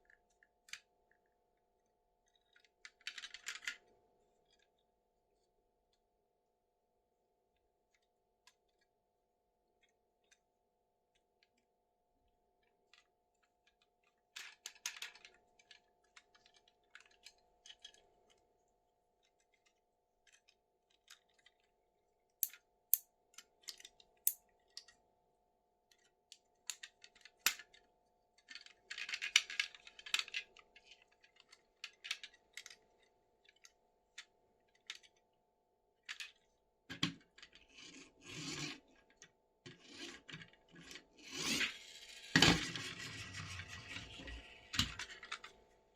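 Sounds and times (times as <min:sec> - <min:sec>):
plastic toy clicks and taps: 0:22.4 - 0:23.0, 0:26.7 - 0:27.7.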